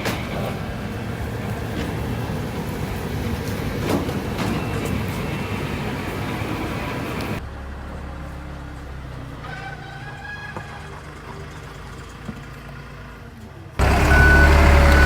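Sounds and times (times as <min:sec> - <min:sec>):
heavy machinery rattling: 0:00.0 - 0:08.3, 0:13.4 - 0:15.0.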